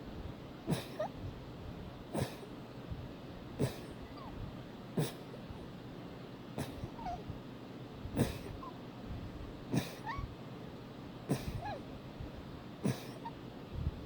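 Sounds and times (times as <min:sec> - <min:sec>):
person sneezing: 0:00.7 - 0:01.1, 0:02.2 - 0:02.5, 0:03.6 - 0:03.9, 0:08.2 - 0:08.6, 0:09.8 - 0:10.1, 0:11.3 - 0:11.7, 0:12.8 - 0:13.3.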